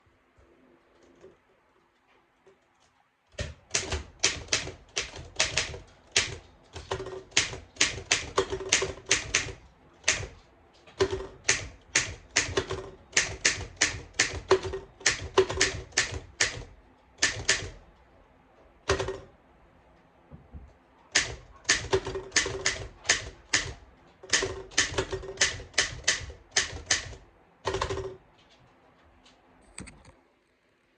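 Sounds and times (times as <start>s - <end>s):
manual typewriter typing: 3.3s - 17.8s, 18.8s - 19.3s, 21.1s - 28.7s.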